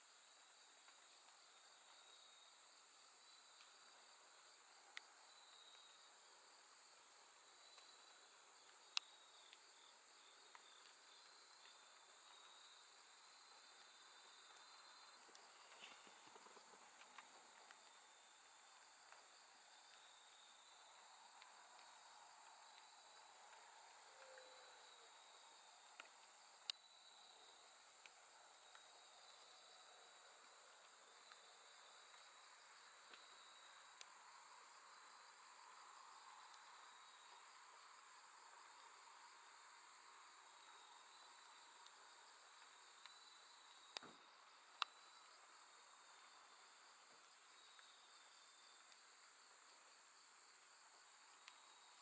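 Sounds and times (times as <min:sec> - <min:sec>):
night grass insects trilling: 0:00.0 - 0:52.0.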